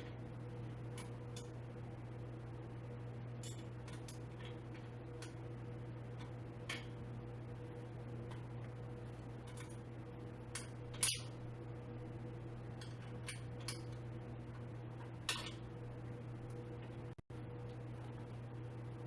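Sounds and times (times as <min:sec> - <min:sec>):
steady electrical hum: 0:00.0 - 0:19.0
clicks and knocks of metal parts: 0:03.4 - 0:05.4, 0:06.1 - 0:07.0, 0:09.4 - 0:09.9, 0:10.5 - 0:11.4, 0:12.7 - 0:15.7.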